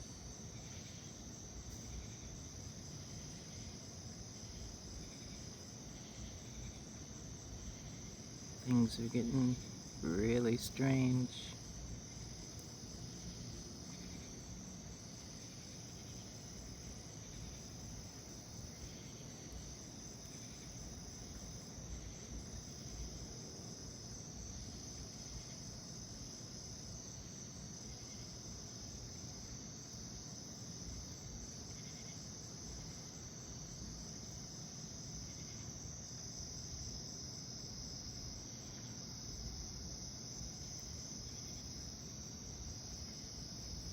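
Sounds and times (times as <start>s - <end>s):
continuous low rumble: 0.0s - 26.4s
insect trill pulsing: 0.0s - 43.9s
insects trilling steadily: 0.0s - 43.9s.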